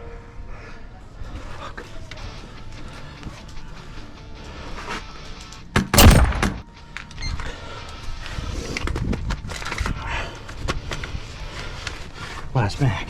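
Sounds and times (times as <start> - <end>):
background music: 2.3 - 8.8.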